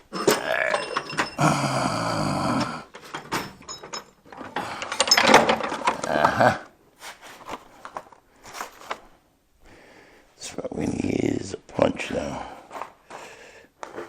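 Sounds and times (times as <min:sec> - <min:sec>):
metal hand tools clattering: 0:00.0 - 0:01.7, 0:02.9 - 0:06.4.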